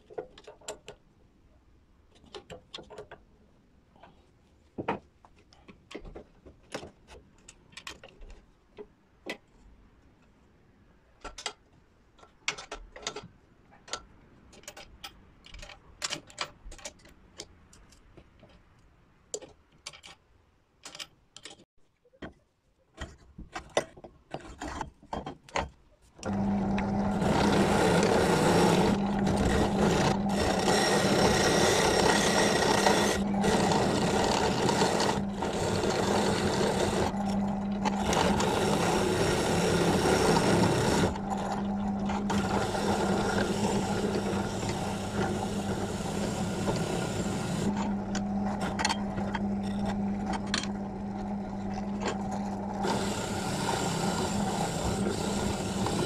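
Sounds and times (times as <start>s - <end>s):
power tool motor running: 26.2s - 56.0s.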